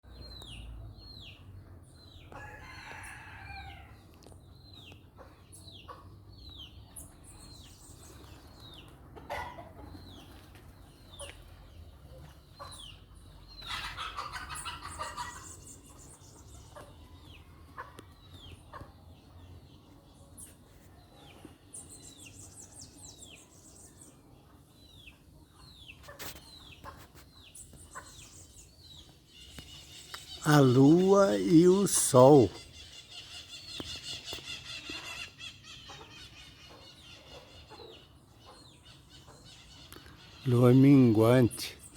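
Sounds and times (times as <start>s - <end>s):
hens clucking: 8.9s - 10.6s, 13.6s - 15.7s.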